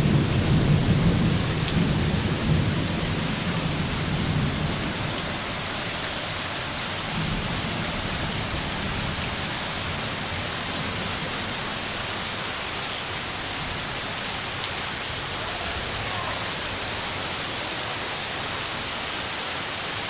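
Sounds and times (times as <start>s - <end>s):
low rumble of thunder: 0.0s - 6.0s, 7.0s - 12.2s
steady rain: 0.0s - 20.0s.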